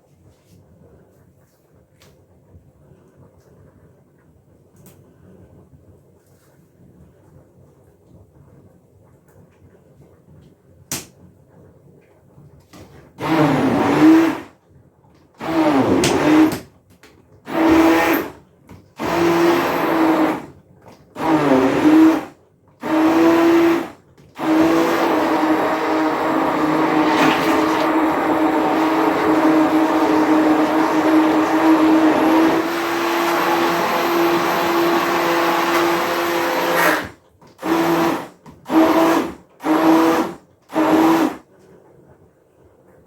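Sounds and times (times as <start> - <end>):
blender motor running: 13.2 - 14.5, 15.4 - 16.6, 17.5 - 18.4, 19.0 - 20.5, 21.2 - 41.4.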